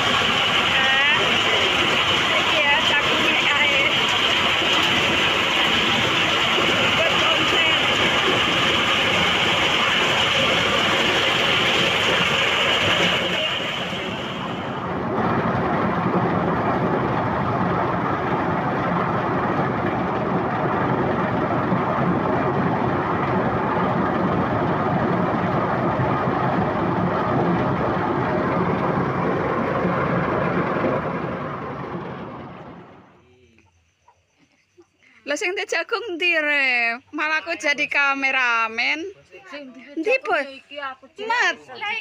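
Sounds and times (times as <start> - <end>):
corn sheller engine running: 0.0 - 33.2.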